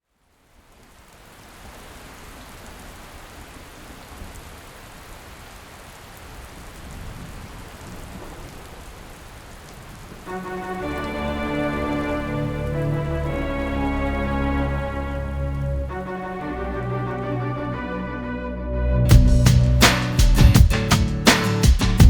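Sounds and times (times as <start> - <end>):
steady rain falling: 0.0 - 17.7
music with sustained chords: 10.3 - 22.0.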